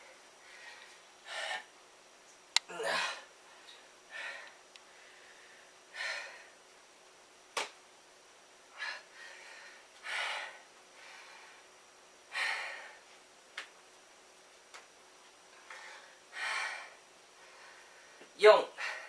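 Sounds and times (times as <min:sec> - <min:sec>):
man breathing hard: 0:00.4 - 0:01.7, 0:02.8 - 0:06.6, 0:08.7 - 0:11.7, 0:12.3 - 0:13.1, 0:15.6 - 0:19.0.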